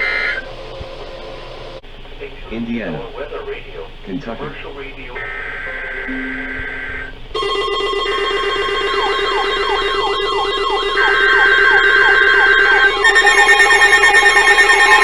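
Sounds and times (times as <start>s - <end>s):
falling chirps: 5.2s - 7.3s, 8.5s - 15.0s
loud buzzing alarm: 5.2s - 15.0s
steady electronic alert tones: 5.8s - 15.0s
warbling high tone: 6.0s - 15.0s.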